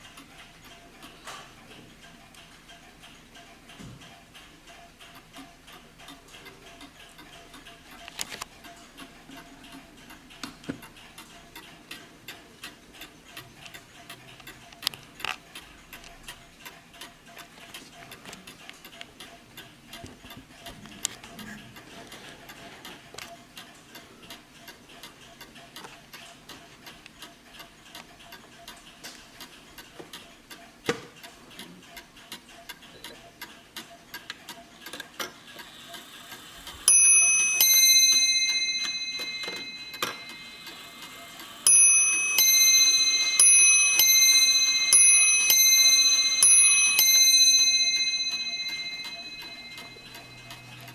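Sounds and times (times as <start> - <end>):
mantel clock ticking: 0.0 - 50.9
clock chime bell strikes: 36.9 - 41.1, 41.7 - 50.9.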